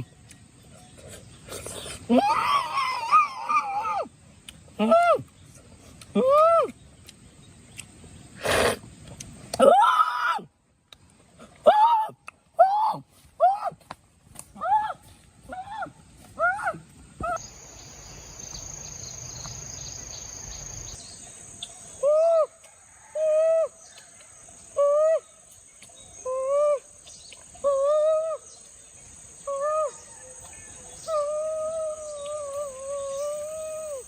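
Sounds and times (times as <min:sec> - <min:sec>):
insects droning: 0:00.0 - 0:34.0.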